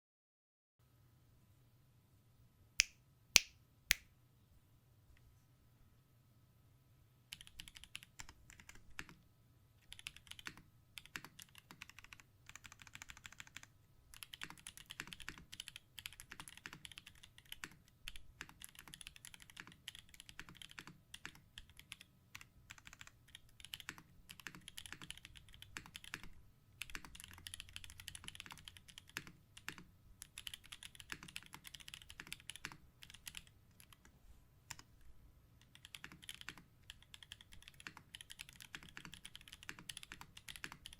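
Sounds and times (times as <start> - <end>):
mechanical keyboard typing: 7.3 - 9.2, 9.8 - 34.1, 35.6 - 40.9.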